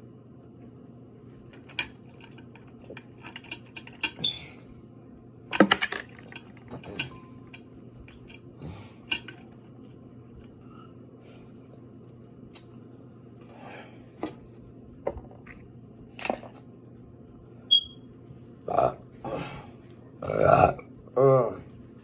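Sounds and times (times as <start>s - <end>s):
utensils and dishes clinking: 1.5s - 4.4s, 5.5s - 9.6s.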